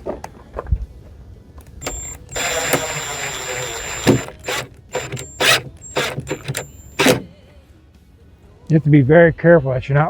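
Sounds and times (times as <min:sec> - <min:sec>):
power drill driving screw into wood: 0:01.8 - 0:07.3.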